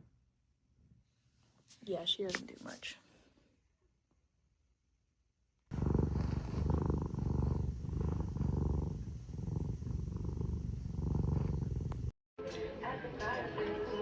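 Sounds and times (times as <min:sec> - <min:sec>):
cat purring: 0:05.7 - 0:12.2.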